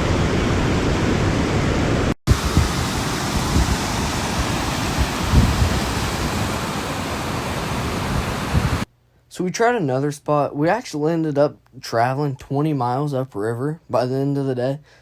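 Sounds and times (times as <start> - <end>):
rushing outdoor noise: 0.0 - 8.9.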